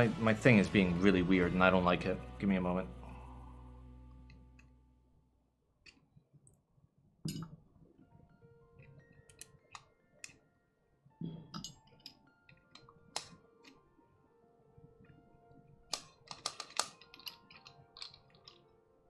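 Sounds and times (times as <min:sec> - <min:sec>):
faint background music: 0:00.0 - 0:05.2, 0:07.2 - 0:19.0
light clicks of keyboard parts: 0:15.9 - 0:18.8.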